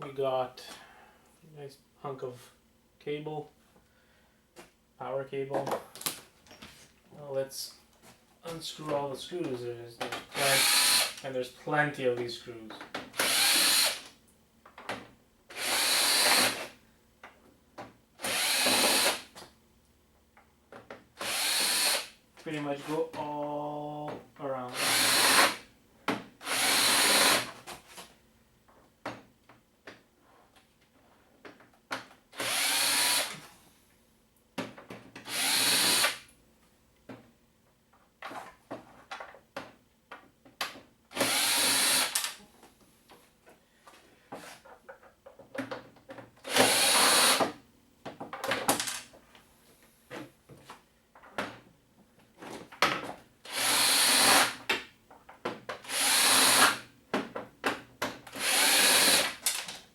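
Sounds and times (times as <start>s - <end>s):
electric screwdriver running: 10.5s - 11.2s, 13.2s - 14.0s, 15.6s - 16.6s, 18.3s - 19.2s, 21.2s - 22.1s, 24.8s - 25.6s, 26.4s - 27.5s, 32.4s - 33.4s, 35.3s - 36.2s, 41.2s - 42.3s, 46.5s - 47.4s, 53.5s - 54.6s, 55.9s - 56.8s, 58.4s - 59.4s.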